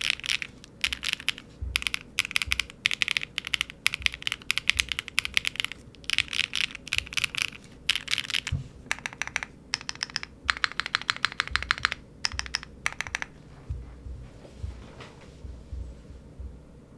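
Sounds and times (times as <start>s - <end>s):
typing on mechanical keyboard: 0.0s - 13.4s.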